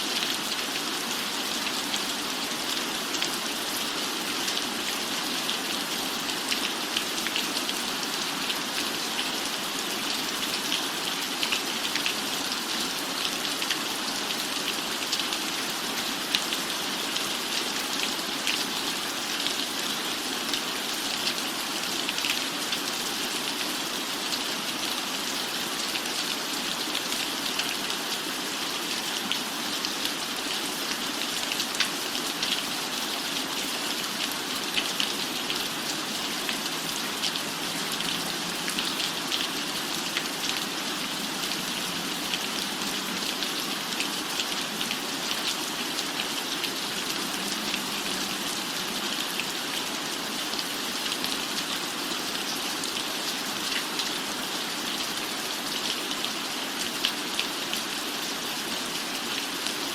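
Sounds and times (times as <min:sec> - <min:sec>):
rain falling on a roof: 0:00.0 - 0:59.9.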